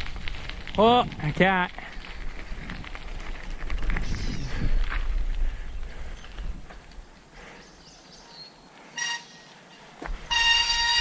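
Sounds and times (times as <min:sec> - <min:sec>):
bicycle riding over dirt trail: 0:00.0 - 0:07.6, 0:09.9 - 0:11.0.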